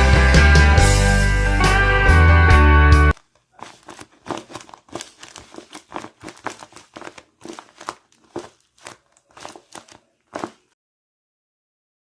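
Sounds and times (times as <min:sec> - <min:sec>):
paper crinkling and rustling: 0:03.1 - 0:10.8.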